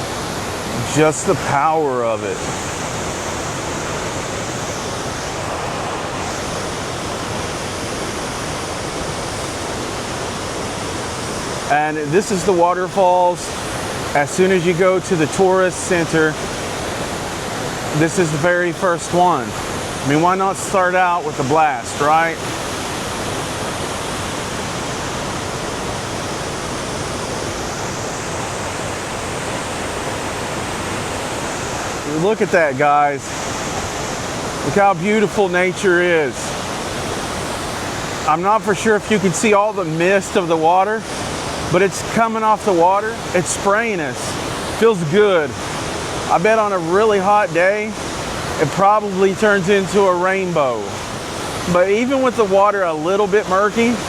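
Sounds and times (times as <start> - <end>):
waterfall roaring: 0.0 - 54.0.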